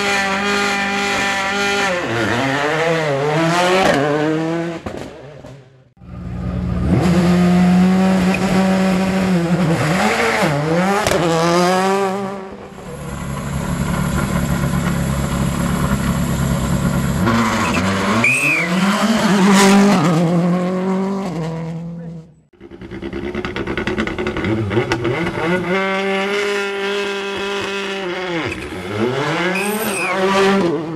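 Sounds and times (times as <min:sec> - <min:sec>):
rally car engines at high revs: 0:00.0 - 0:30.9
tyre squeal: 0:17.2 - 0:19.2, 0:28.4 - 0:30.5.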